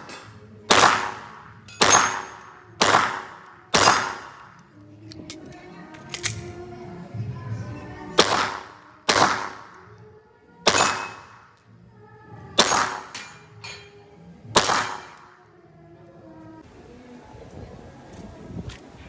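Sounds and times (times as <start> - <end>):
pistol shots with echo: 0.0 - 4.6, 8.2 - 9.8, 10.6 - 11.5, 12.6 - 13.4, 14.6 - 15.3.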